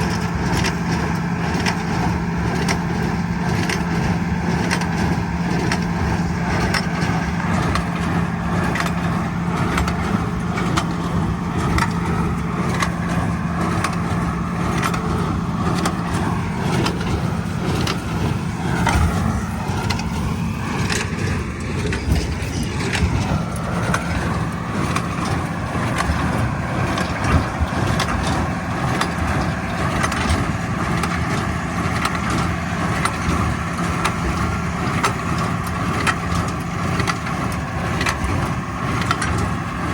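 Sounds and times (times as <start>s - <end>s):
hay baler clattering: 0.0s - 39.9s
tractor engine running: 0.0s - 39.9s.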